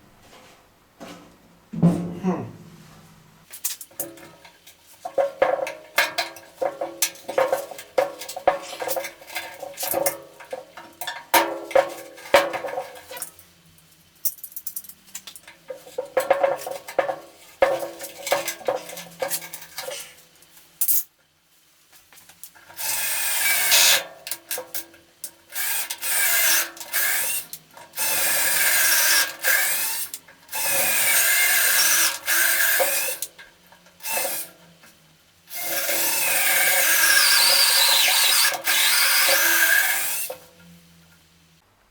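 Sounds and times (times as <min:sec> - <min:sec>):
hand tools knocking and scraping: 0:00.2 - 0:03.2, 0:05.0 - 0:13.1
power tool running: 0:35.5 - 0:40.4.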